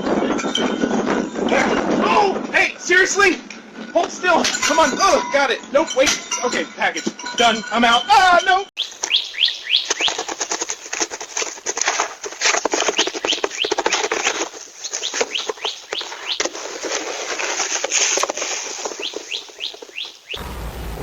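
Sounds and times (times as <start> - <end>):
birds chirping: 7.5 - 11.4, 12.6 - 16.9, 18.8 - 21.0.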